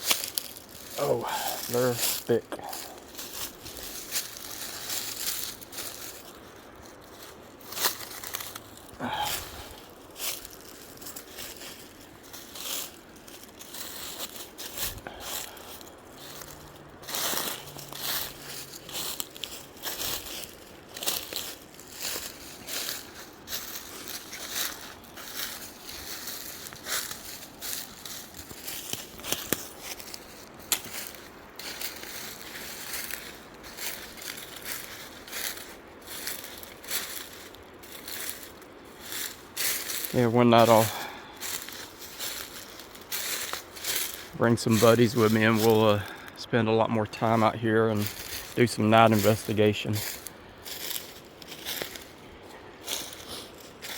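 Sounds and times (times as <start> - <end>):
twigs snapping: 0.0 - 1.0, 7.8 - 11.6, 12.4 - 40.1
brush crackling and tearing: 0.0 - 46.4, 47.1 - 53.9
footsteps crunching through undergrowth: 0.0 - 53.9.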